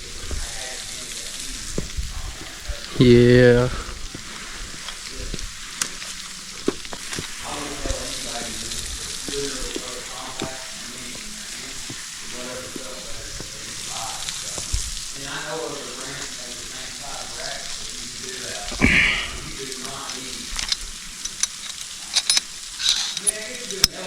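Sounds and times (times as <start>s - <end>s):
water pouring down a waterfall: 0.0s - 24.0s.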